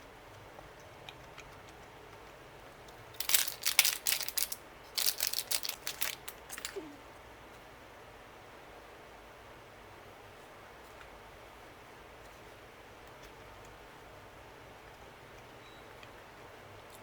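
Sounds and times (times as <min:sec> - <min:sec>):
plastic packaging crinkling: 0:03.2 - 0:06.9.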